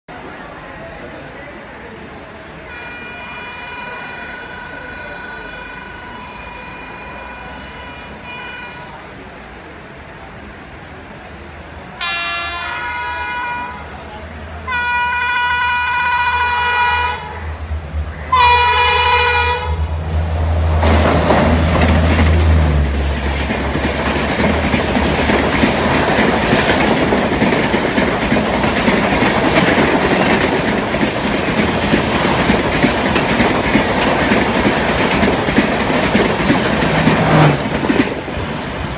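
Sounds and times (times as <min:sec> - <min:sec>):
train wheel rumble: 0:02.3 - 0:38.9
locomotive air horn blasts: 0:02.7 - 0:09.0, 0:12.0 - 0:13.8, 0:14.7 - 0:17.4, 0:18.3 - 0:19.9
clickety-clack over rail joints: 0:20.7 - 0:38.9.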